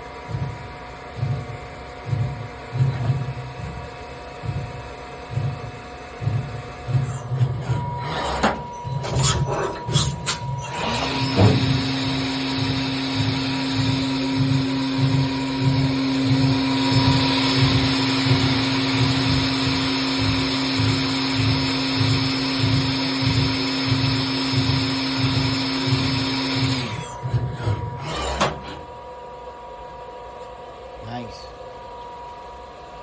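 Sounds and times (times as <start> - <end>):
milling machine spindle whine: 0.0 - 33.0
machine clunk: 7.2 - 11.7.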